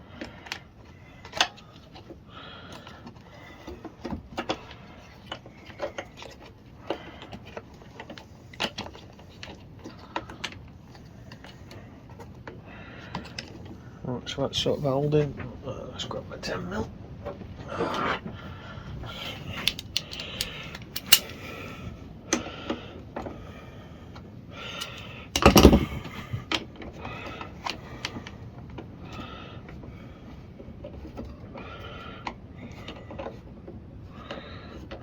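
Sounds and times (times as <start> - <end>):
hand tools clicking and clinking: 19.2 - 21.6, 24.7 - 26.0.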